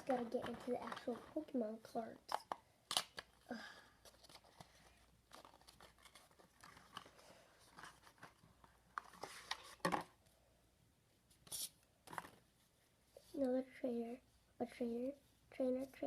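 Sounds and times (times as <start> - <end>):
card packaging rustling: 0.0 - 1.7, 2.4 - 10.2.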